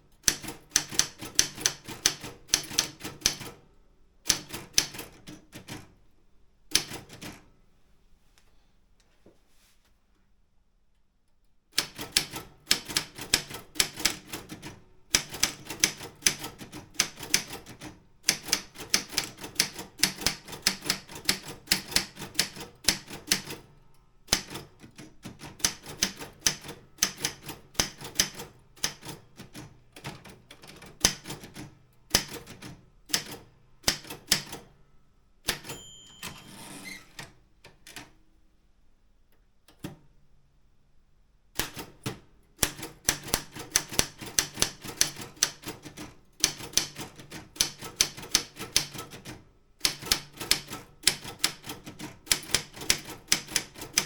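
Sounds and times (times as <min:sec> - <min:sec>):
typewriter keystrokes: 0:00.2 - 0:03.6, 0:04.3 - 0:05.9, 0:06.7 - 0:07.4, 0:11.8 - 0:23.7, 0:24.3 - 0:34.7, 0:35.5 - 0:36.6, 0:41.6 - 0:54.0
typewriter bell ringing: 0:35.6 - 0:37.1
typewriter carriage rasping: 0:35.6 - 0:37.3.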